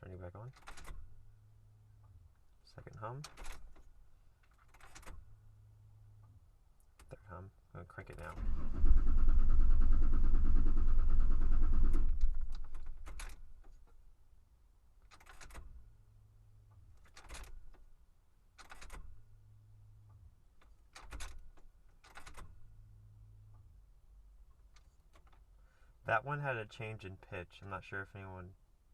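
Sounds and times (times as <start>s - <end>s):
faint clicks and rattles: 2.8s - 5.3s, 9.3s - 14.0s, 15.0s - 15.8s, 16.7s - 17.9s, 18.6s - 19.2s, 20.1s - 22.7s, 24.4s - 25.5s
car engine cranking: 8.2s - 13.5s.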